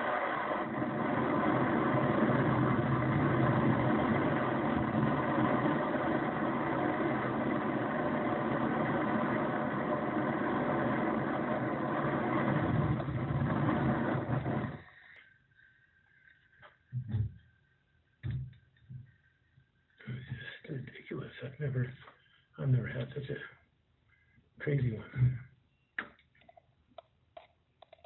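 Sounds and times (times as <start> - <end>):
torch burning with a roar: 0.0 - 14.9.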